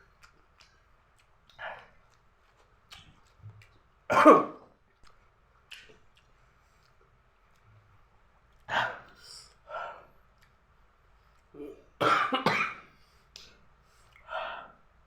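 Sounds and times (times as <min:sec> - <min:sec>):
man coughing: 0:04.1 - 0:04.6, 0:12.0 - 0:12.9
throat clearing: 0:04.1 - 0:04.7
breathing: 0:06.5 - 0:07.0, 0:09.1 - 0:10.2, 0:12.9 - 0:14.8.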